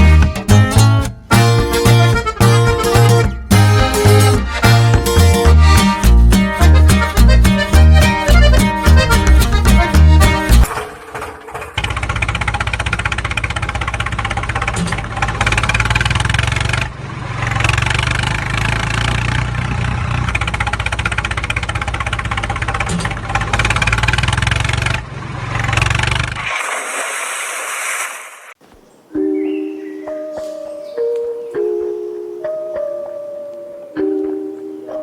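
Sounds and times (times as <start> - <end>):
vehicle engine running: 0.0 - 26.4.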